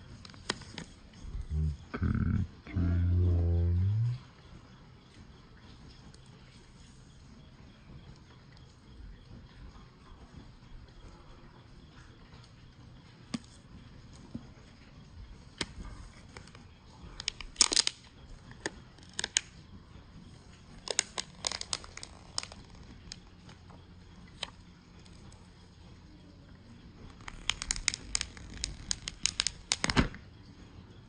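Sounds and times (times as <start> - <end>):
packaging crinkling and tearing: 17.2 - 19.5, 20.8 - 23.2, 24.3 - 24.5, 27.2 - 30.2
packaging clicks and taps: 27.2 - 30.1.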